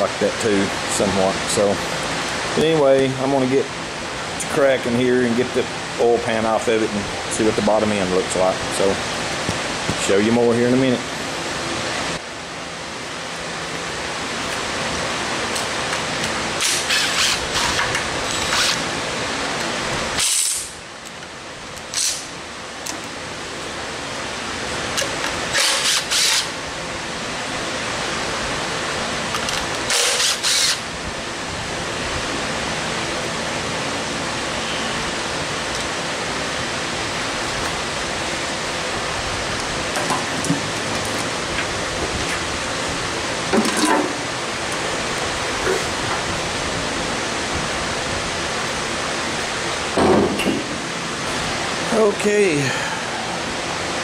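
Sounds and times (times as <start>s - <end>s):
hissing shop background noise: 0.0s - 54.0s
power tool bursts: 16.6s - 18.8s, 20.2s - 20.8s, 25.5s - 26.6s, 29.9s - 30.8s.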